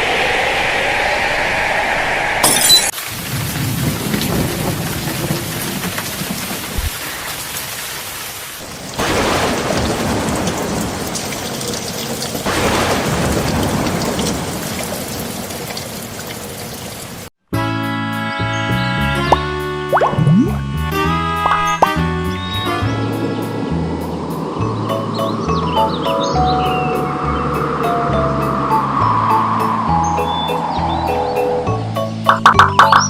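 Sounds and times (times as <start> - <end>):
steady rain: 2.9 - 17.3
rolling thunder: 3.1 - 7.1, 8.6 - 17.2.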